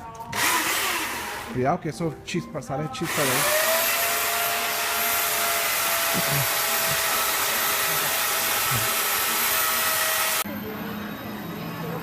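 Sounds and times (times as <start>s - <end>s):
power saw running: 0.3s - 1.6s, 3.0s - 10.4s
faint voices: 6.1s - 9.7s, 10.4s - 12.0s.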